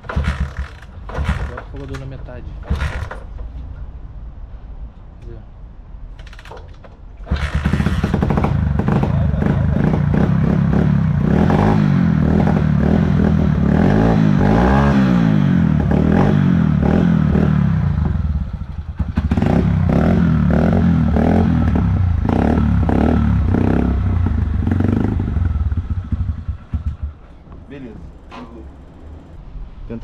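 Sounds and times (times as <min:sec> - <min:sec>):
motorcycle engine revving: 0:00.0 - 0:03.3, 0:07.2 - 0:27.6.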